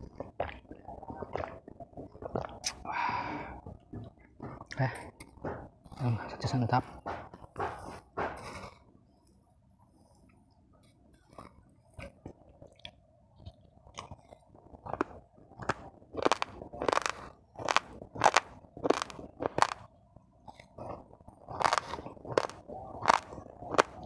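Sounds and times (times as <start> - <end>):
raw rice crunching: 13.9 - 19.9, 20.5 - 24.0.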